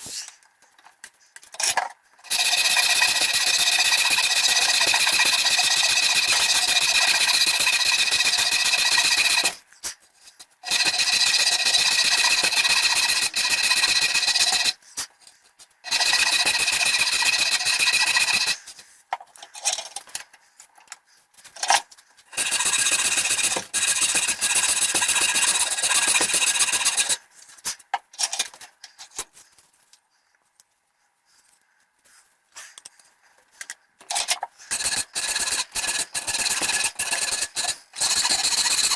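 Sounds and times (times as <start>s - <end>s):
power tool whining on wood: 2.2s - 9.6s, 10.6s - 14.8s, 22.3s - 27.2s, 34.7s - 38.9s.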